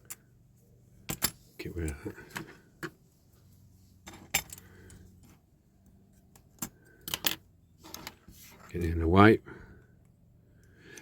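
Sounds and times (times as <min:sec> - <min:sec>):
metal parts clicking and clinking: 0:01.0 - 0:02.9, 0:04.0 - 0:05.4, 0:06.3 - 0:08.2.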